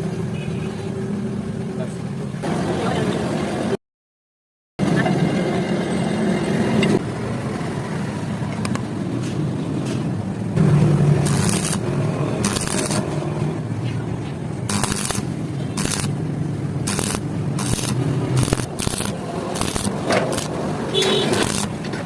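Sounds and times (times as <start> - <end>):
welding hum: 10.6 - 13.7, 14.6 - 22.0
hissing crackle of welding: 11.2 - 11.8, 12.4 - 13.1, 14.7 - 16.2, 16.8 - 21.9.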